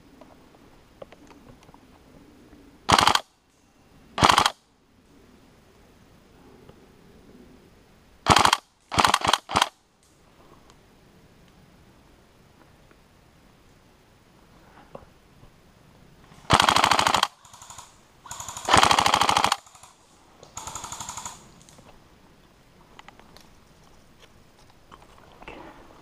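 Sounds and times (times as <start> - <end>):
airsoft guns firing full auto: 2.9 - 3.3, 4.2 - 4.6, 8.2 - 9.8, 16.5 - 21.8.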